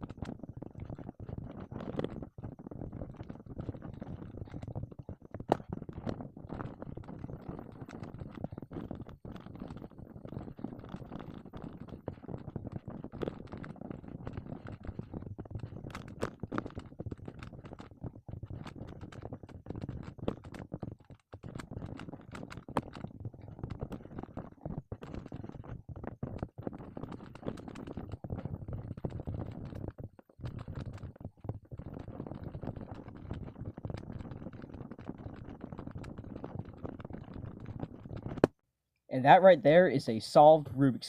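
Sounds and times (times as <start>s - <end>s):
puzzle cube clicking and rattling: 0.1s - 38.5s.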